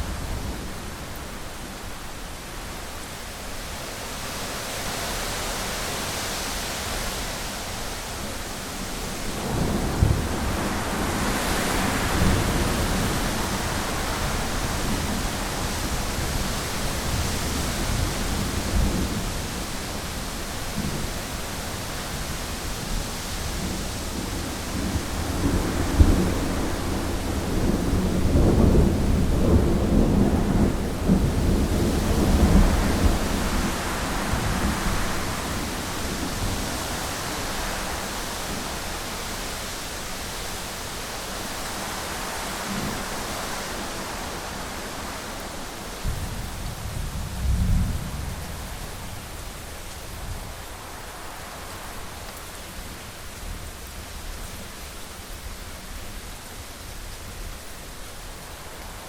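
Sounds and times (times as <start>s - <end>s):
heavy rain hissing: 0.0s - 59.0s
rolling thunder: 23.6s - 37.0s, 46.0s - 49.4s.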